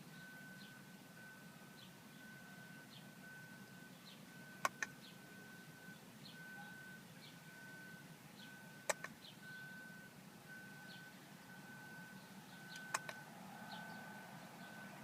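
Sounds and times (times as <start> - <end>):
car electronic warning tone: 0.1 - 15.0
sharp double clicks: 8.9 - 9.2, 12.7 - 13.2.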